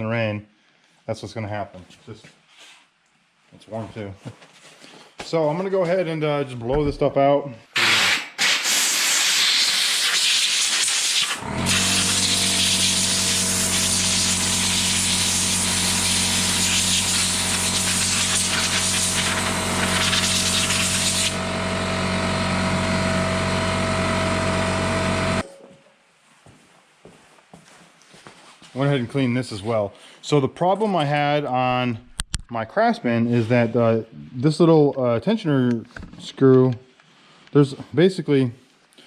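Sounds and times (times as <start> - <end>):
air jet hissing: 7.8 - 21.4
machine hum: 11.4 - 25.8.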